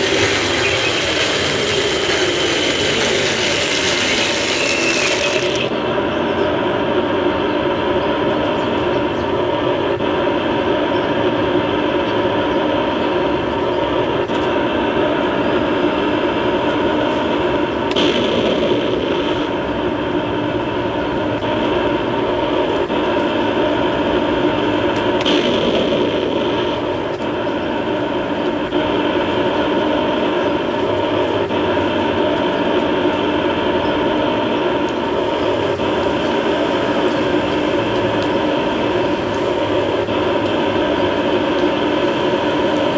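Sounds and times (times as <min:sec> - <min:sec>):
tank engine sound from small speaker: 0:00.0 - 0:42.9.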